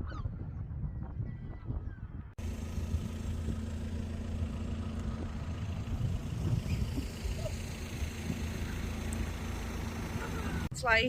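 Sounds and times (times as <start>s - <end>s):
car engine and road drone: 2.4s - 10.7s.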